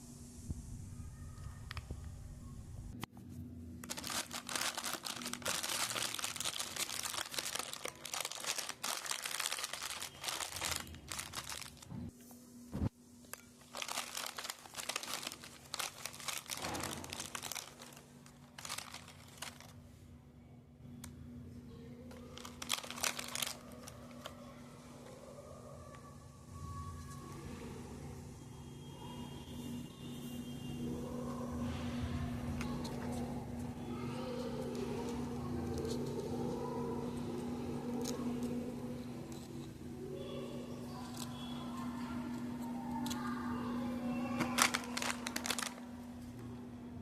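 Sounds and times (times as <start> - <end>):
biscuit packet crinkling and tearing: 3.8 - 12.0, 13.3 - 19.8, 22.1 - 24.5, 33.0 - 39.8, 44.0 - 46.2.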